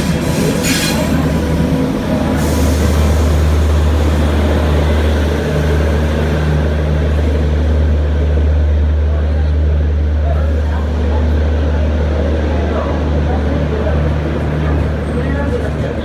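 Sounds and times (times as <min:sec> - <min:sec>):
wheels hissing on rails: 0:00.0 - 0:07.8
train low rumble: 0:00.0 - 0:16.0.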